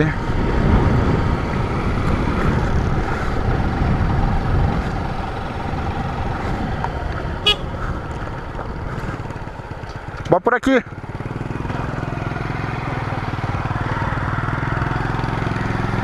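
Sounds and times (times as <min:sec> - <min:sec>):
wind rumble on microphone: 0:00.0 - 0:10.3
motorcycle running: 0:00.0 - 0:16.0.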